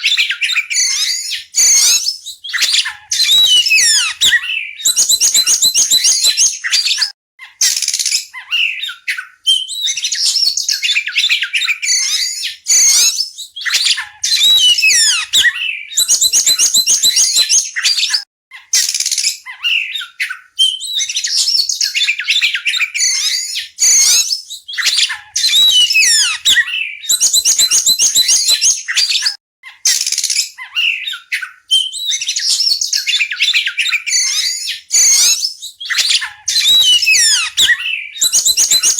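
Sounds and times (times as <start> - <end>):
bird singing trills and whistles: 0.0 - 18.2, 18.8 - 38.9.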